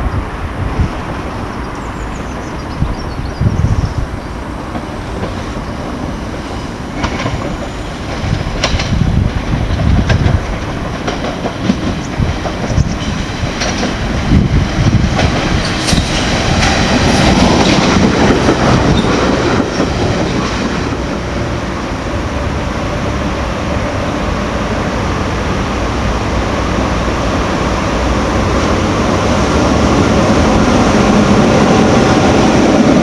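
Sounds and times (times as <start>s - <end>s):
train rumbling on track: 0.0s - 33.0s
wheels clacking over rail joints: 4.3s - 22.5s.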